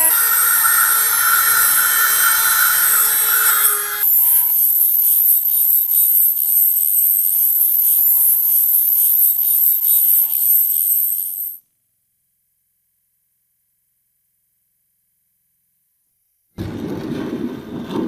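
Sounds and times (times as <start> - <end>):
scraping rust off metal grinder: 0.0 - 11.6.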